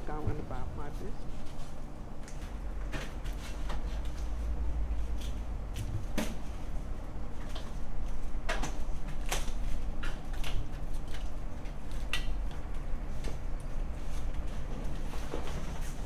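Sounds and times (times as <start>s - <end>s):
steady low rumble: 0.0s - 1.5s, 3.9s - 7.3s.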